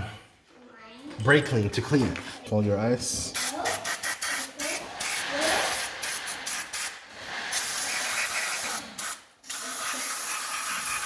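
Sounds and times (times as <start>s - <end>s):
aerosol spray hissing: 3.4s - 11.0s.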